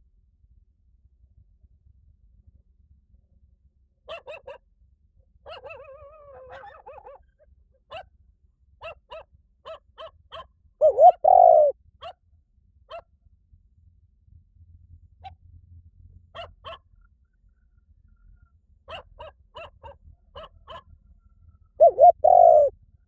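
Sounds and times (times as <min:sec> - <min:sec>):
dove cooing: 0:10.8 - 0:11.7, 0:21.8 - 0:22.7.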